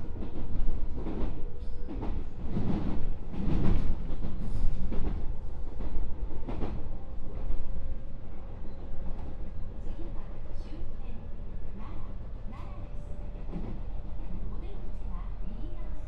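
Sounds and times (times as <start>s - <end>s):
train wheels rumbling on rail: 0.0s - 16.0s.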